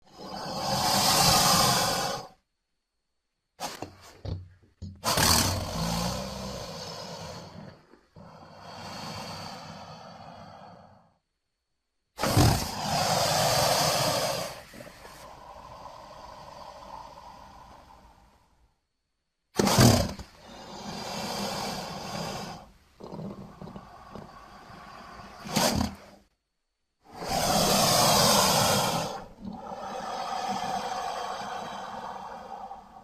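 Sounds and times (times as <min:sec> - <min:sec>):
creature growl: 0:27.1 - 0:33.0
creature roaring: 0:27.1 - 0:33.0.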